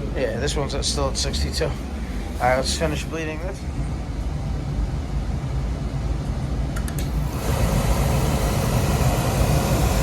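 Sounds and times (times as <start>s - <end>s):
boiler burner humming: 0.0s - 10.0s
loud hissing rush: 7.1s - 10.0s.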